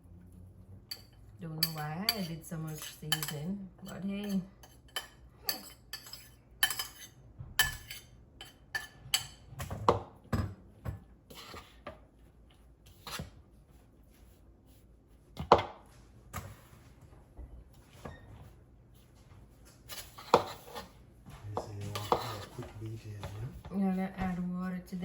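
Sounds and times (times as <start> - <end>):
utensils clinking against dishes: 0.9 - 9.9, 21.5 - 23.4.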